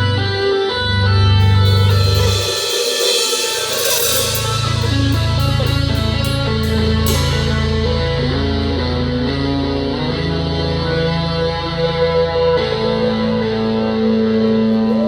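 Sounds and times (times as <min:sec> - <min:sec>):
progressive rock on stringed instruments: 0:00.0 - 0:15.0
cymbal strokes: 0:01.2 - 0:11.6.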